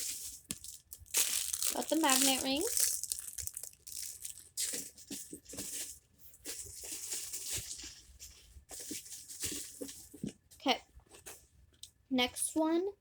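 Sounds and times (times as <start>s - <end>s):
plastic packaging crinkling: 0.0s - 8.0s.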